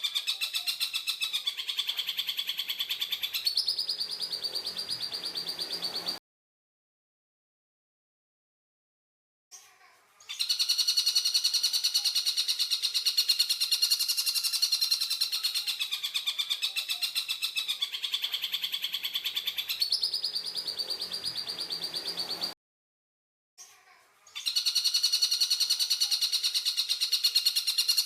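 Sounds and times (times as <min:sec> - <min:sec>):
bird's harsh rattling call: 0:10.2 - 0:22.5, 0:24.3 - 0:28.0.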